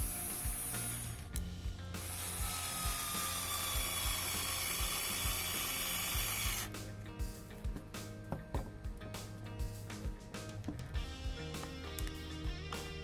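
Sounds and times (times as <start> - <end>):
cordless screwdriver ratcheting rattle: 0.0 - 1.4, 2.0 - 6.7.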